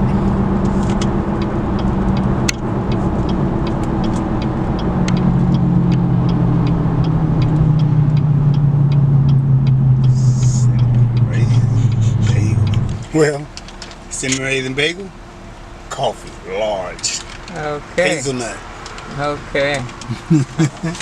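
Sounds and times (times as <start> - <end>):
steady ticking: 0.0 - 16.4
car engine hum from inside: 0.0 - 21.0.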